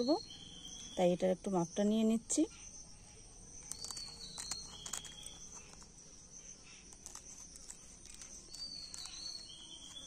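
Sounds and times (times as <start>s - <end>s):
crickets chirring: 0.0s - 10.0s
scissors snipping dried leaves: 3.6s - 5.9s, 6.9s - 10.0s.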